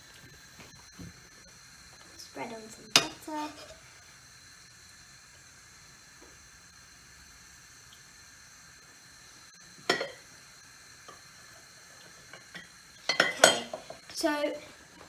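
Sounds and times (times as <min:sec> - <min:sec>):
butter sizzling in a pan: 0:00.0 - 0:15.0
utensil clink: 0:12.3 - 0:13.9.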